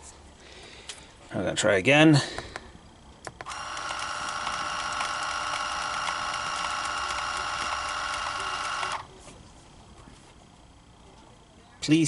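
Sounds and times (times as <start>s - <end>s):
label maker motor whirring: 3.3s - 9.2s.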